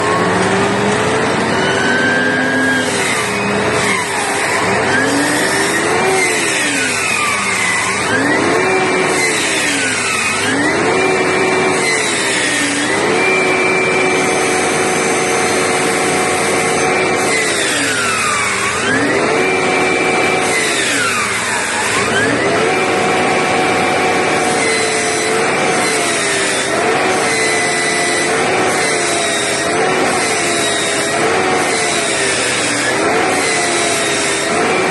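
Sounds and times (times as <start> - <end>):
bus retarder whining: 0.0 - 34.9
drivetrain and road noise: 0.0 - 34.9.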